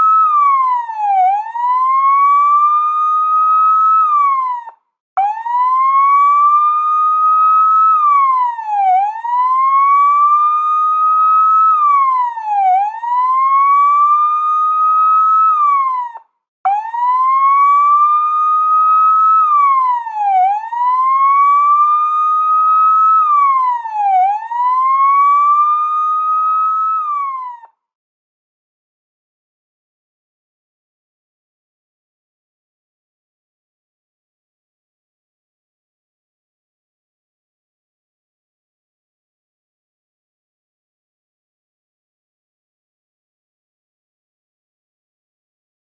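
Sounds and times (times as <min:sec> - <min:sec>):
police siren wailing: 0:00.0 - 0:27.8.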